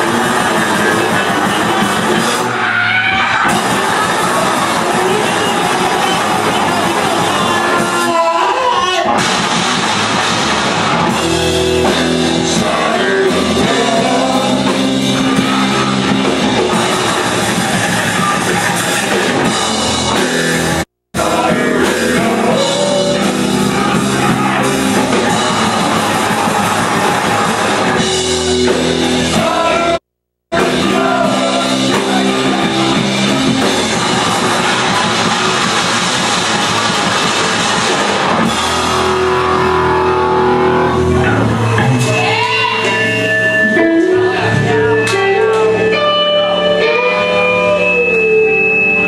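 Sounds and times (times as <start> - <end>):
drum kit: 0.0 - 49.0
loud rock music: 0.0 - 49.0
person singing: 12.4 - 15.7, 21.2 - 23.5, 29.2 - 33.0.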